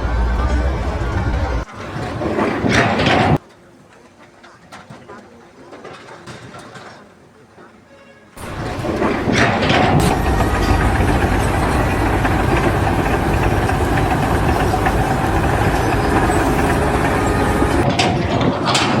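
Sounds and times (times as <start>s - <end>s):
engine running loudly: 8.4s - 17.9s.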